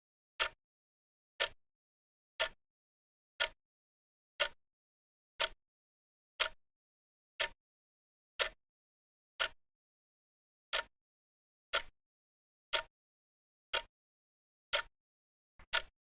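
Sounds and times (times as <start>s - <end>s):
clock ticking: 11.7s - 11.9s, 12.7s - 12.9s, 15.6s - 15.9s.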